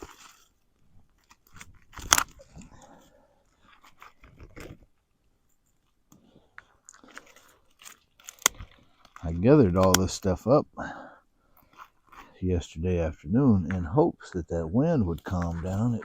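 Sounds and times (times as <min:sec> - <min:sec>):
campfire wood snapping and crackling: 0:01.2 - 0:02.7, 0:06.6 - 0:10.4.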